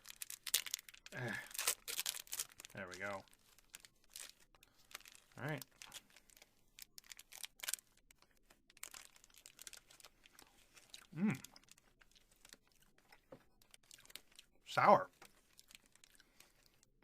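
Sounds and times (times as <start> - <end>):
plastic wrapper crinkling: 0.0 - 14.5, 15.1 - 16.9
person humming: 11.2 - 11.4.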